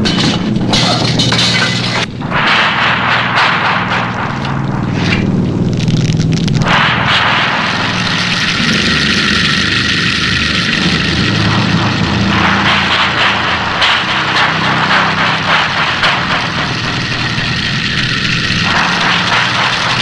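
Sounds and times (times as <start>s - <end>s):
chainsaw engine running: 7.6s - 20.0s.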